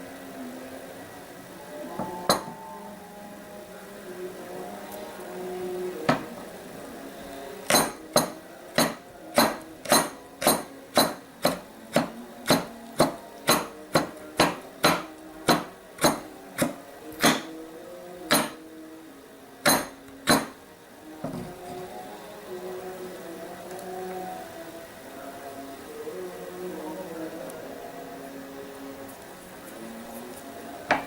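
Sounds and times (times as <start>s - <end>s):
hard strikes on ginger root: 7.7s - 17.5s.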